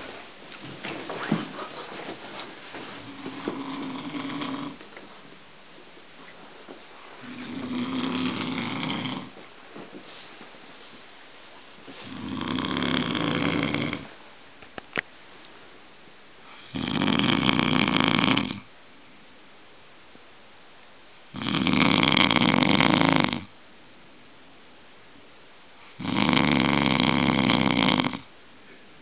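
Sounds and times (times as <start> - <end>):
man snoring heavily: 3.1 - 4.8, 7.3 - 9.3, 12.0 - 14.1, 16.5 - 18.7, 21.4 - 23.5, 26.0 - 28.3.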